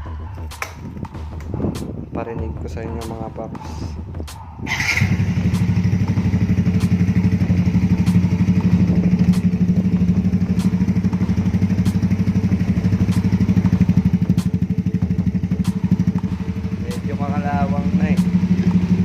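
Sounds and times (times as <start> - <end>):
scooter engine idling: 4.7 - 19.0.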